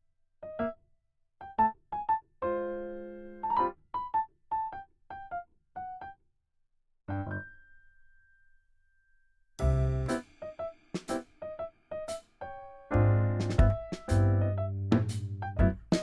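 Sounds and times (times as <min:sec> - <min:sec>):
bouncy keyboard tune: 0:07.1 - 0:07.5, 0:09.6 - 0:10.3, 0:12.9 - 0:16.0.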